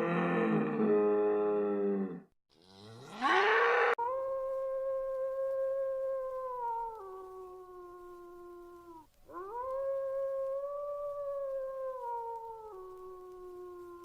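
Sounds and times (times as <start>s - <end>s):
dog howling: 3.1s - 14.0s.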